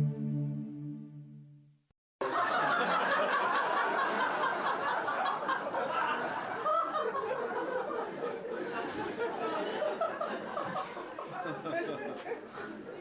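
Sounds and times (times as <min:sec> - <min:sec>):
held musical tone: 0:00.0 - 0:01.7
group of people laughing: 0:02.2 - 0:13.0.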